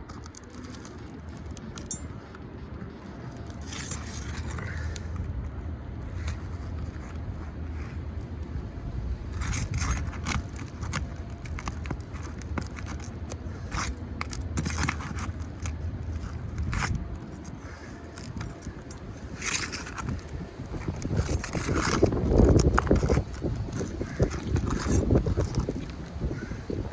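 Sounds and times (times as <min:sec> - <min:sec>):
shingles scraping and crackling: 0:09.5 - 0:26.5.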